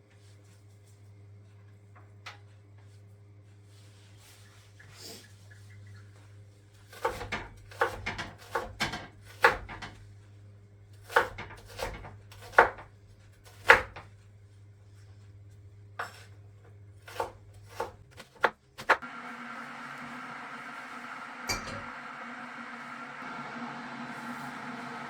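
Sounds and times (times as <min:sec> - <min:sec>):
knife chopping on cutting board: 0:06.9 - 0:09.8, 0:11.0 - 0:12.9, 0:13.5 - 0:14.0, 0:16.0 - 0:16.3, 0:17.0 - 0:19.0.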